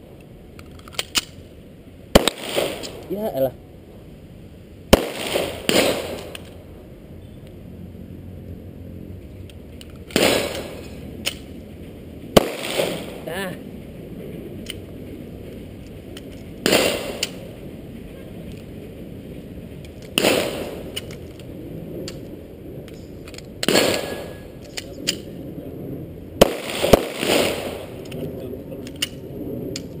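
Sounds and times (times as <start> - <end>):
pistol shots with ringing echo: 2.2 - 3.0, 4.9 - 6.4, 10.2 - 10.8, 12.4 - 13.2, 16.6 - 17.4, 20.2 - 20.8, 23.7 - 24.4, 26.4 - 28.0.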